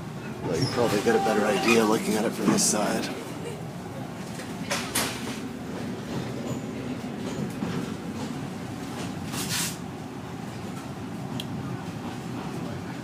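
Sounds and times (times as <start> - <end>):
train rumbling along track: 0.0 - 13.0.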